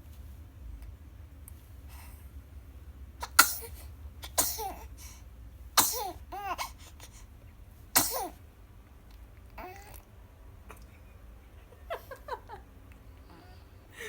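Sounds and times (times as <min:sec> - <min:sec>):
baby sneezing: 0:03.2 - 0:04.9, 0:05.8 - 0:07.2, 0:08.0 - 0:08.4
baby vocal sound: 0:09.6 - 0:10.1.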